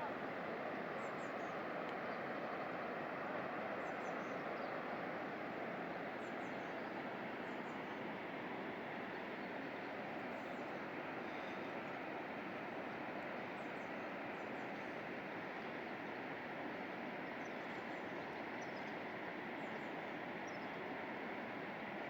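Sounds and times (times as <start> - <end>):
river water flowing: 0.0 - 22.0.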